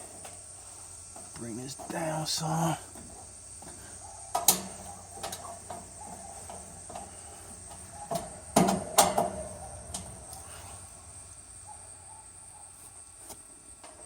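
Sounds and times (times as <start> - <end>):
tools clicking on metal parts: 4.3 - 7.1.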